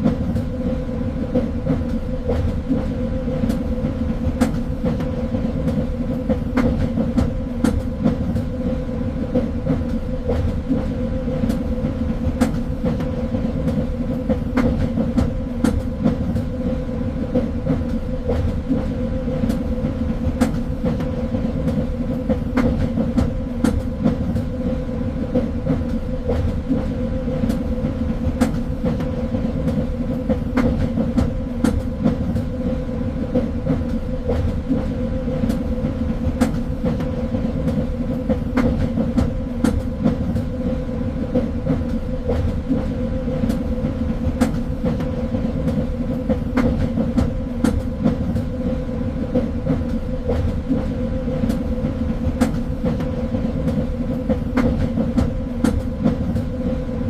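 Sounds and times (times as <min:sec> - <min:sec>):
train rumbling on rails: 0:00.0 - 0:57.0.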